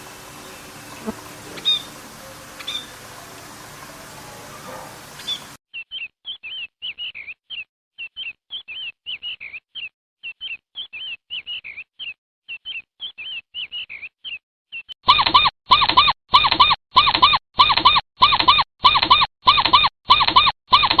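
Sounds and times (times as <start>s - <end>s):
bird chirping: 0.0s - 14.9s
squeaky animal call: 1.0s - 3.0s, 15.1s - 21.0s.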